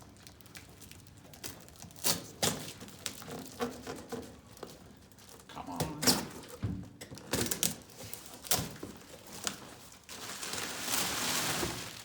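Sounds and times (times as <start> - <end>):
packaging scraping rustle: 7.4 - 12.0.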